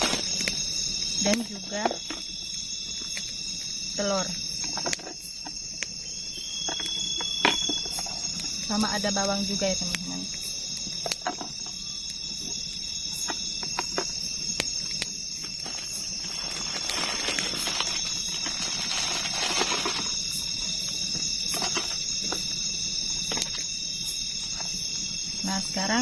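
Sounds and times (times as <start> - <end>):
items rustling: 0.0 - 0.6, 15.3 - 22.5
crickets chirring: 0.0 - 26.0.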